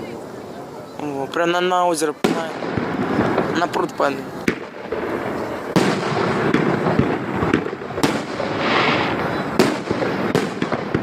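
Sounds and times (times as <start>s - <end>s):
rumble of fireworks bursts: 1.7s - 11.0s
hissing crackle: 2.1s - 11.0s
fireworks shells bursting: 2.3s - 11.0s.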